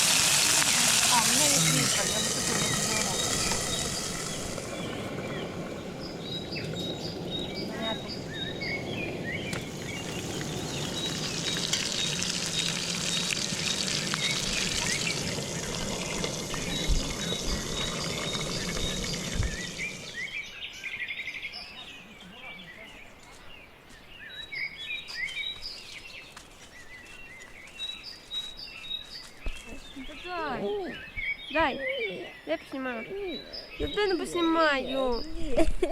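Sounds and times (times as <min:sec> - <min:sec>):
songbirds chirping: 0:00.6 - 0:35.7
steady rushing noise: 0:02.1 - 0:20.3.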